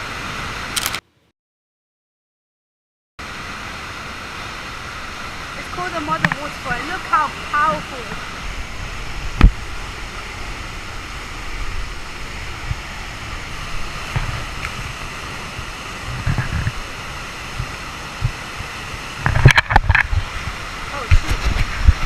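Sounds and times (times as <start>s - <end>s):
waterfall rushing: 0.0s - 0.8s, 3.2s - 22.0s
low thumps: 8.6s - 9.9s.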